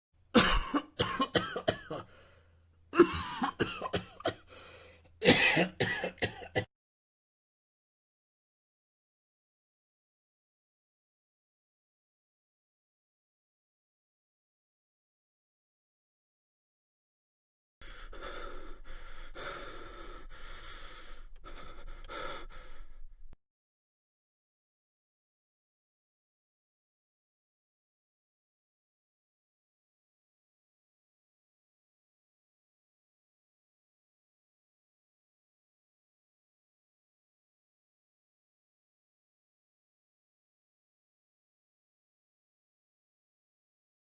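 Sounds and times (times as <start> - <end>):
person coughing: 0.4 - 2.1, 3.0 - 4.4, 5.2 - 6.7
person breathing hard and gasping: 4.4 - 5.2, 17.8 - 23.4.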